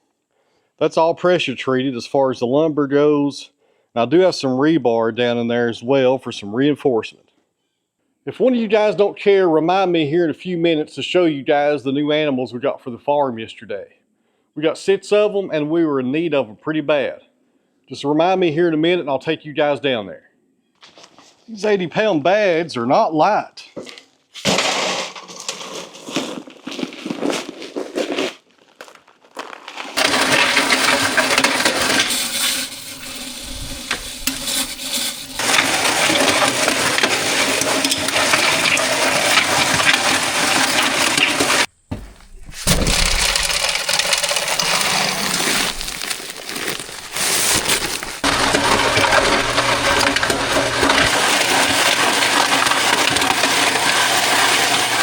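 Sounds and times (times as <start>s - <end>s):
wet concrete churning: 24.4s - 55.0s.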